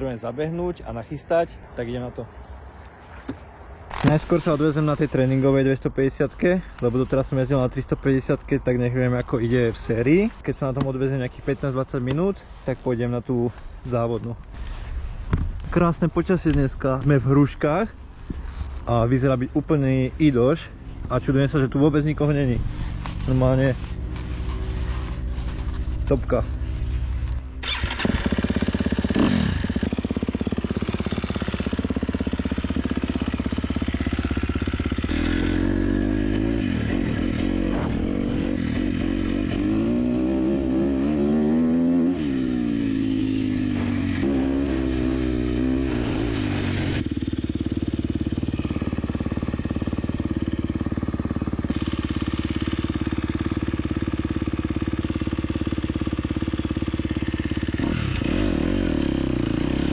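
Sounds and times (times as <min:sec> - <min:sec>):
motocross bike engine revving: 0:22.2 - 0:59.9.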